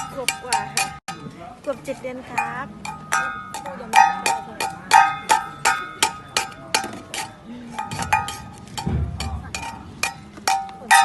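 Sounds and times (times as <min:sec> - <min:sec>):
small metal bell dinging: 0:02.4 - 0:06.7.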